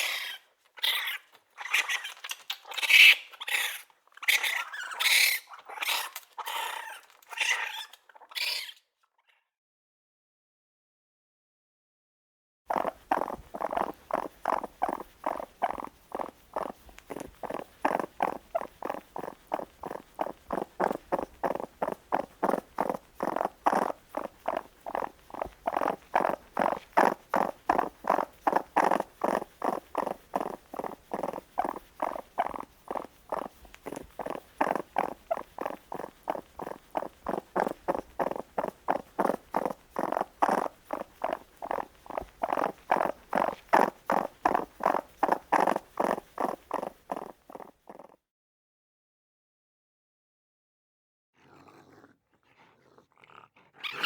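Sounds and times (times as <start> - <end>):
baby raccoon crying: 0.0 - 8.8, 12.7 - 47.6, 53.8 - 54.0.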